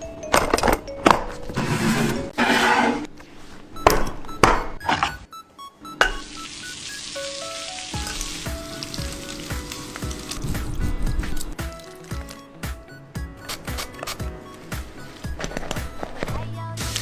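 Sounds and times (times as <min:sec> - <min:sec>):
soft background music: 0:00.0 - 0:17.0.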